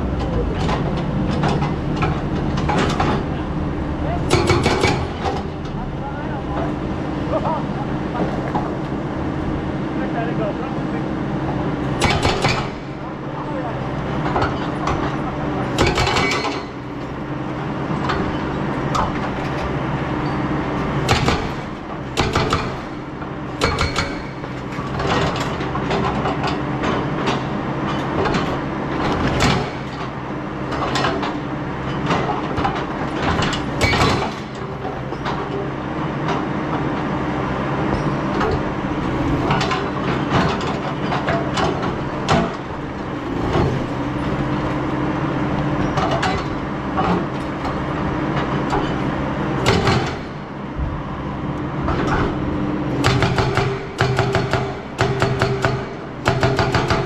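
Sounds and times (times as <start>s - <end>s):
excavator diesel engine running: 0.0s - 57.0s
sharp metal clanks and knocks: 4.3s - 5.5s, 12.0s - 13.0s, 14.2s - 16.8s, 23.6s - 36.8s, 49.6s - 50.4s, 53.0s - 57.0s.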